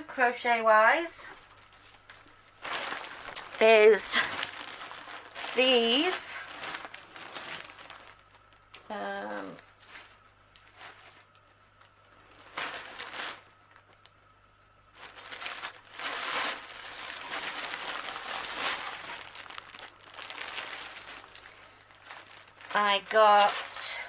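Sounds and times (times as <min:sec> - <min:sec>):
plastic packaging crinkling: 0:00.1 - 0:24.0.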